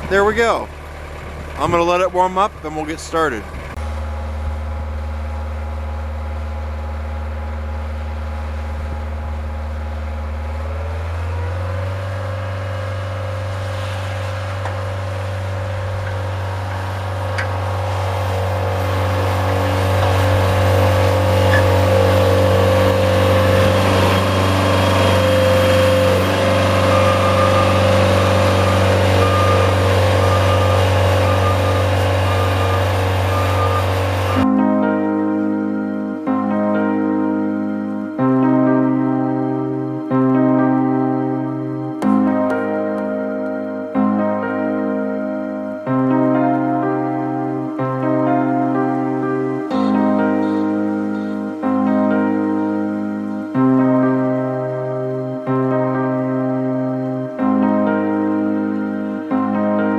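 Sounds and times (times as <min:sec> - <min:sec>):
diesel engine revving: 0:00.0 - 0:59.9
faint repeated beep: 0:26.9 - 0:34.5.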